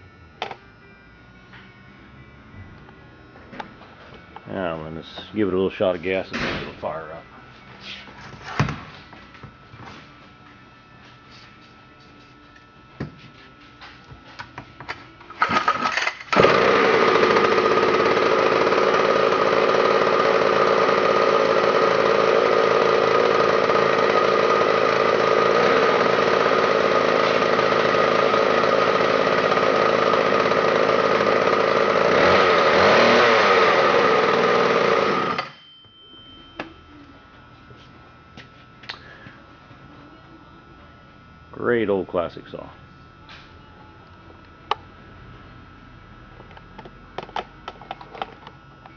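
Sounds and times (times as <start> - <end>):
chainsaw starting clicks: 15.4 - 35.5
chainsaw running and revving: 16.3 - 35.5.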